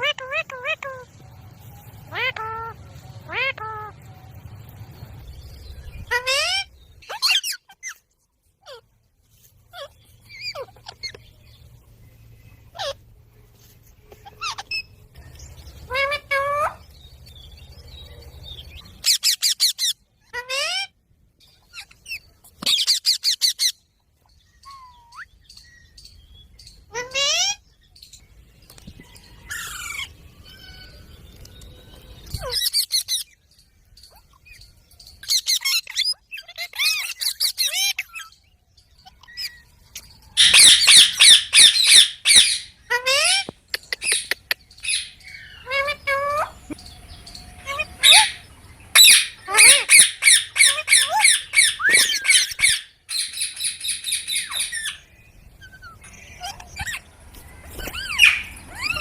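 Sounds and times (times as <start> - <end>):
parrot squawking: 0.0 - 1.1, 2.1 - 4.0, 6.0 - 8.0, 9.7 - 11.2, 12.7 - 13.0, 14.2 - 14.9, 15.9 - 16.8, 19.0 - 21.0, 26.9 - 27.6, 35.2 - 38.3, 40.4 - 57.1, 57.8 - 59.0.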